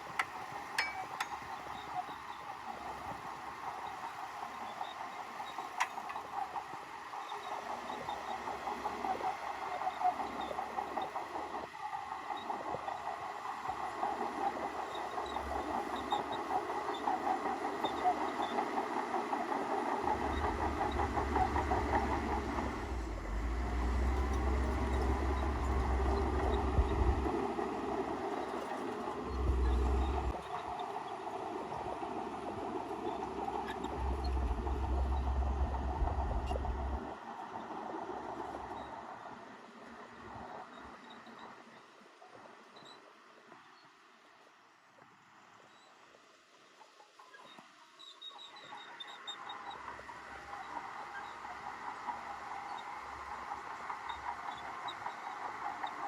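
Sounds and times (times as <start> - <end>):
steel tracks clanking: 0.0 - 42.0, 48.2 - 56.0
diesel engine running: 13.7 - 30.8, 31.9 - 37.2
deep low rumble: 20.1 - 27.4, 29.2 - 30.3, 33.8 - 37.1.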